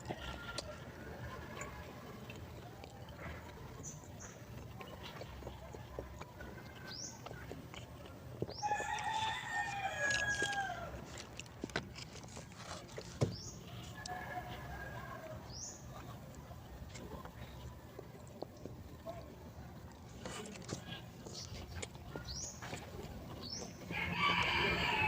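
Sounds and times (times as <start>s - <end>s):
rooster crowing: 8.6s - 11.0s, 23.9s - 25.0s.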